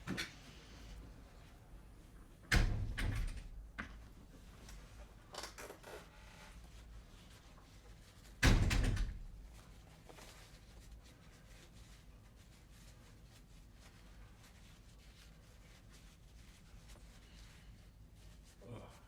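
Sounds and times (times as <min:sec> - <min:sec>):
door banging shut: 0:02.5 - 0:03.5, 0:08.4 - 0:09.4
door knocks and rattles: 0:02.5 - 0:03.5, 0:08.4 - 0:09.3.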